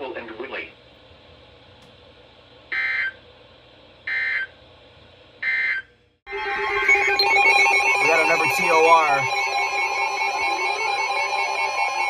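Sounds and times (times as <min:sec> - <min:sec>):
buzzing data tone: 0:06.3 - 0:12.0
shrill warbling data beeps: 0:06.4 - 0:12.0.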